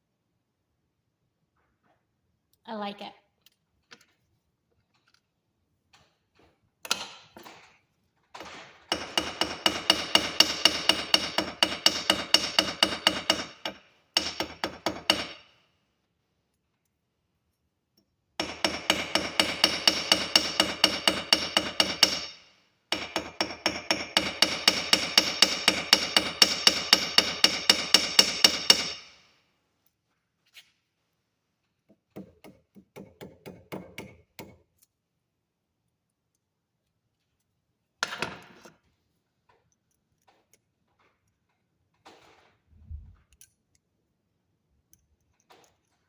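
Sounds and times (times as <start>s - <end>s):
hammer striking copper wire: 8.9s - 15.5s, 18.4s - 29.2s, 31.9s - 34.6s.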